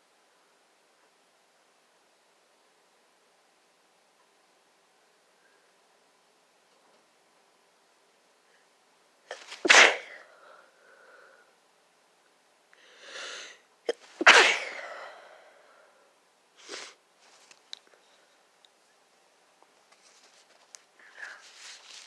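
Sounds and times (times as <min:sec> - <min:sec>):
person sneezing: 0:09.3 - 0:10.4, 0:13.2 - 0:15.4.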